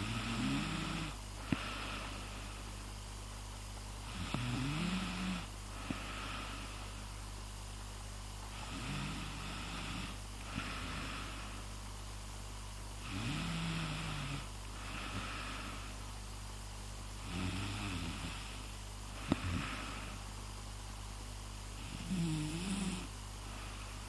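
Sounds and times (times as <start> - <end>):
person snoring: 0.0 - 2.2, 4.0 - 6.8, 8.5 - 11.6, 13.0 - 15.9, 17.2 - 20.2, 21.8 - 23.8
electrical hum: 0.0 - 24.0.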